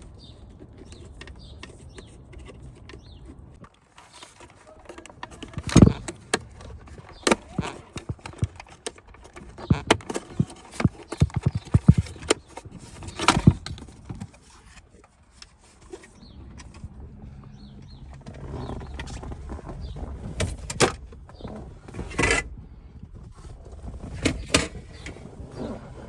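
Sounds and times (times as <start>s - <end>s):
plastic trim clicks and knocks: 4.9s - 12.5s.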